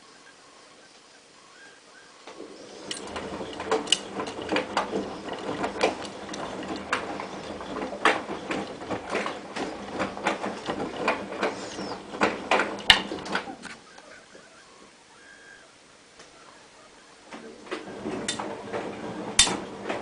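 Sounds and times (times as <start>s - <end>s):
load tumbling in drum: 2.3s - 13.8s, 17.3s - 20.0s
washing machine motor humming: 2.3s - 13.9s, 17.2s - 20.0s.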